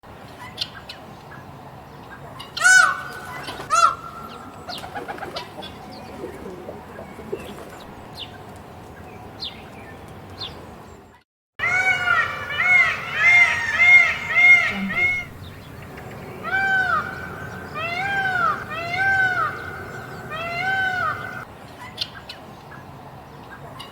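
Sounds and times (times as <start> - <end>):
birds chirping: 0.2 - 23.9
peacock calling: 2.4 - 8.4, 11.6 - 22.3.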